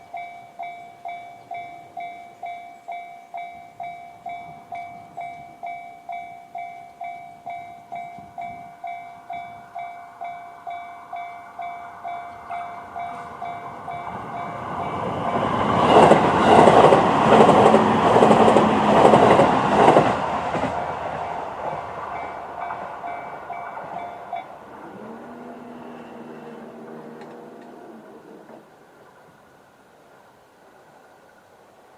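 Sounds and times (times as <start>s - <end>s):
level crossing alarm bell: 0.0s - 16.9s, 21.2s - 24.6s.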